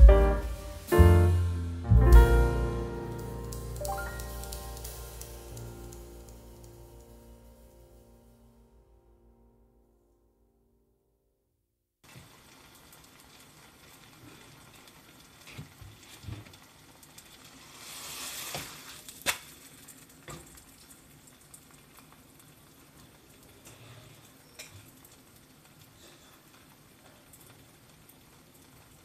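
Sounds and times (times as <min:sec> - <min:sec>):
short hiss: 0:00.0 - 0:06.6, 0:17.8 - 0:19.0.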